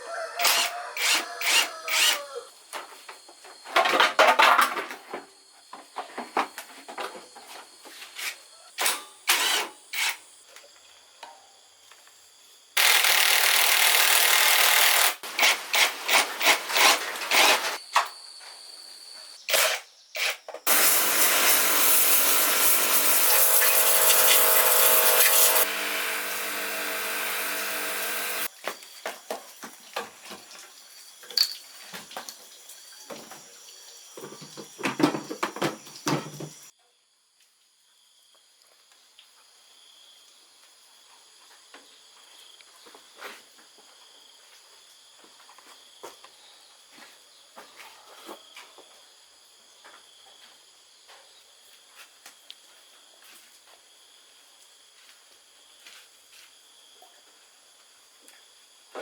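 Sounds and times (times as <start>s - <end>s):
hand tools clicking on metal: 0.4s - 2.2s, 12.8s - 17.8s
power tool running: 0.4s - 2.2s, 12.8s - 17.8s, 20.7s - 28.5s.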